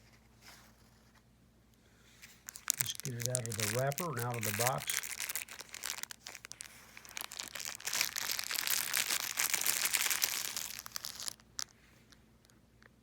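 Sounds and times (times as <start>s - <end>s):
packaging wrapper crinkling: 2.2s - 12.2s.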